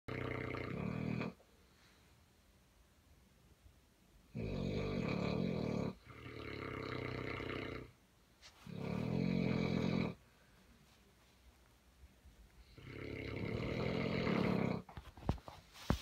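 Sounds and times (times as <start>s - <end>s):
dog snoring: 0.1s - 1.4s, 4.3s - 7.9s, 8.7s - 10.2s, 12.6s - 14.9s.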